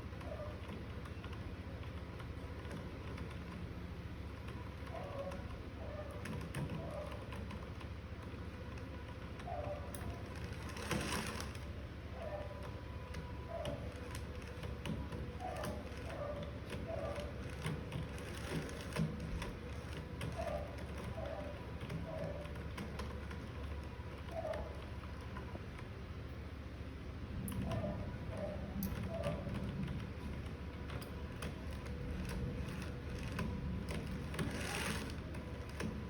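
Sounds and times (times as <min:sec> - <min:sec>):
small motor humming: 0:31.6 - 0:36.0.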